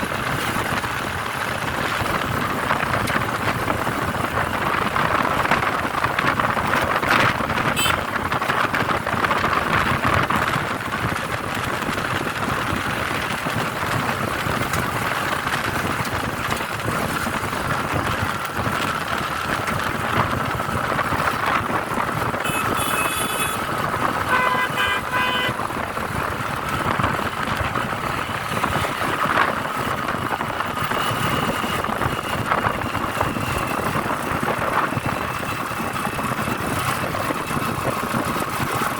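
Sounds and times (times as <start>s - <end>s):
vehicle road and engine noise: 0.0s - 38.9s
vehicle horns honking: 7.7s - 8.2s, 22.4s - 25.7s.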